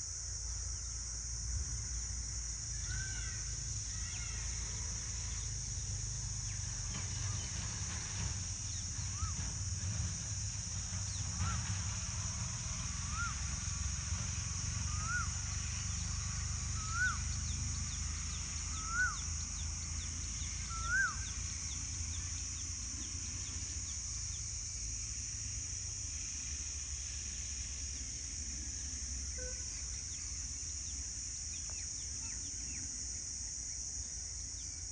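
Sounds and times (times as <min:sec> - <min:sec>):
steady high hiss: 0:00.0 - 0:34.9
peacock calling: 0:20.6 - 0:21.3.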